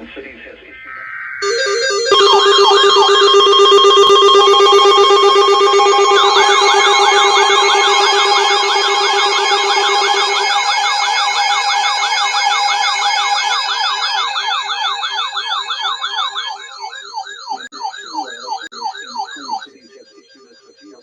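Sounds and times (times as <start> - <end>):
warbling electronic siren tone: 0.8 - 20.2
steady low tone: 1.4 - 12.8.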